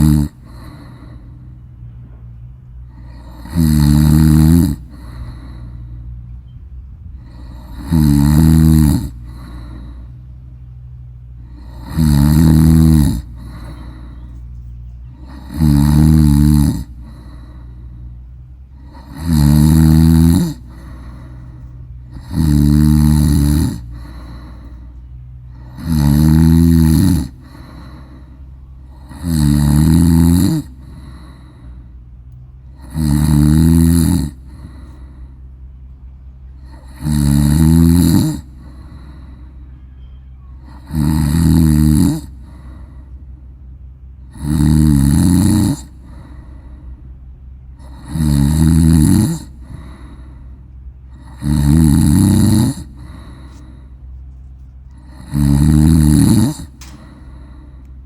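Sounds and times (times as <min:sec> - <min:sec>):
chicken snoring: 0:00.0 - 0:01.4, 0:02.8 - 0:06.0, 0:07.2 - 0:10.1, 0:11.4 - 0:14.4, 0:15.1 - 0:18.0, 0:18.8 - 0:24.9, 0:25.5 - 0:31.9, 0:32.7 - 0:35.2, 0:36.6 - 0:39.4, 0:40.6 - 0:43.1, 0:44.2 - 0:46.8, 0:47.8 - 0:50.5, 0:51.1 - 0:53.9, 0:55.0 - 0:57.7.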